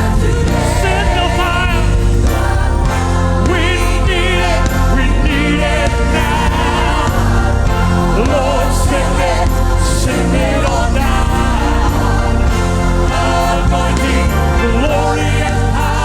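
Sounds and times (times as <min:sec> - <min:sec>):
band playing worship music: 0:00.0 - 0:16.0
singers holding wavering notes: 0:00.0 - 0:16.0
steady bass: 0:00.0 - 0:16.0.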